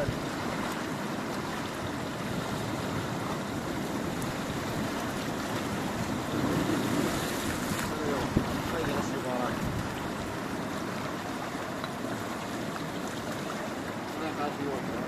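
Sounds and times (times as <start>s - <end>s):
sea noise: 0.0s - 15.0s
wind buffeting microphone: 2.1s - 10.5s.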